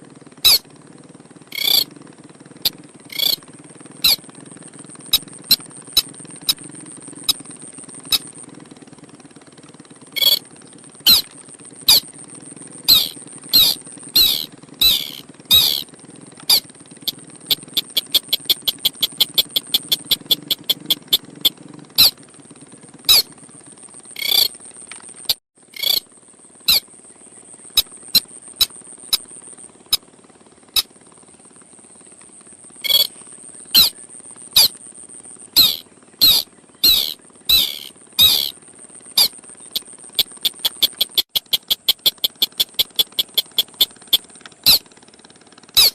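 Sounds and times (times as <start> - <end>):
bird sharp clicking calls: 0.4 - 0.6, 1.5 - 1.9, 2.6 - 3.4, 4.0 - 4.2, 7.2 - 7.5, 8.1 - 8.3, 10.2 - 10.4, 11.1 - 11.3, 11.9 - 12.1, 12.9 - 16.6, 17.5 - 22.1, 23.1 - 23.3, 24.2 - 24.5, 25.3 - 26.0, 32.8 - 33.1, 33.8 - 34.0, 34.6 - 34.8, 35.6 - 38.6, 39.2 - 44.8
high-pitched whine: 1.5 - 1.9, 2.6 - 3.4, 10.2 - 10.5, 11.1 - 12.2, 12.8 - 15.9, 32.8 - 34.8, 35.5 - 44.8.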